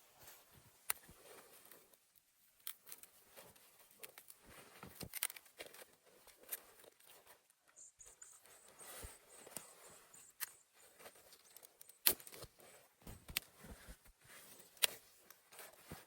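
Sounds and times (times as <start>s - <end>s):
faint crunches and clicks: 0.2s - 16.0s.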